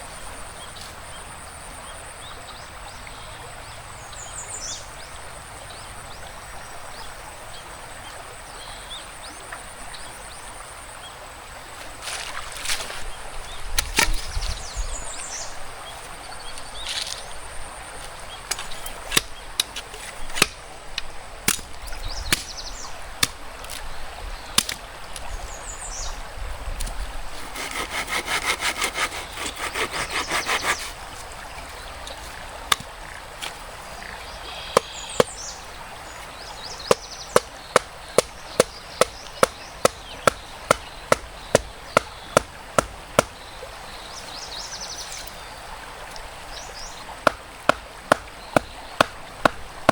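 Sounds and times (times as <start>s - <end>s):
stream running: 0.0s - 49.9s
saw strokes: 27.4s - 31.2s.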